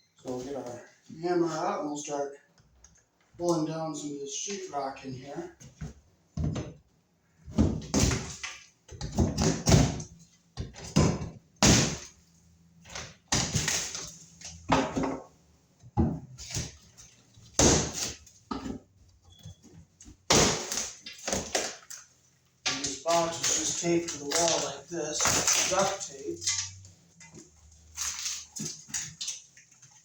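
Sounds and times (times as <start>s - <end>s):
hammer breaking drywall: 7.5s - 12.2s, 12.9s - 14.1s, 17.6s - 18.7s, 20.2s - 21.8s.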